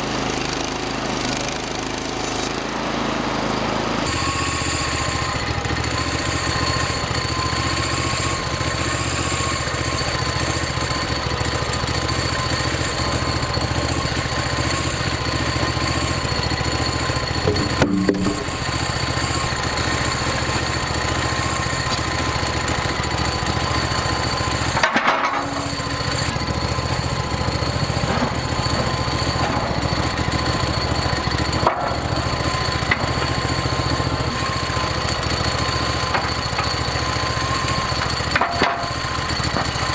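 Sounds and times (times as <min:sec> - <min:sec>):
saw blade high whine: 0:00.0 - 0:39.9
sawmill engine drone: 0:00.0 - 0:39.9.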